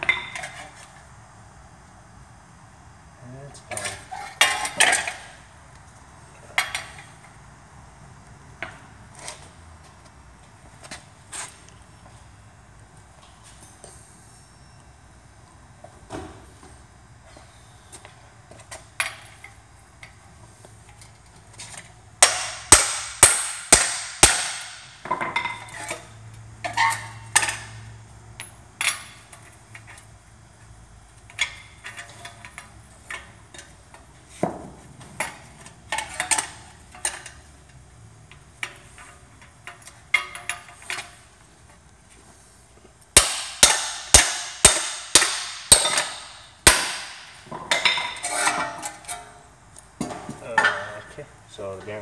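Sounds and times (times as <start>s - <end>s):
tools and metal parts clinking: 0.0s - 0.8s, 3.7s - 5.4s, 24.8s - 30.1s, 31.3s - 34.1s, 35.2s - 41.3s, 44.0s - 51.1s
hammer striking steel: 22.2s - 25.1s, 43.2s - 49.3s.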